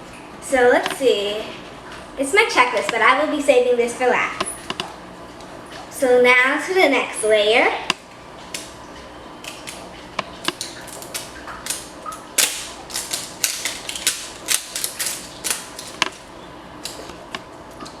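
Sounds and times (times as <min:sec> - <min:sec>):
plastic packaging crinkling: 0:09.4 - 0:17.1.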